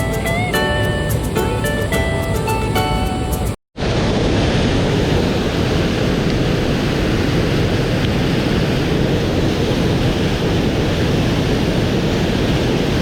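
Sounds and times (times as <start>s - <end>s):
plucked guitar music: 0.0s - 3.6s
mountain stream rushing: 3.8s - 13.0s.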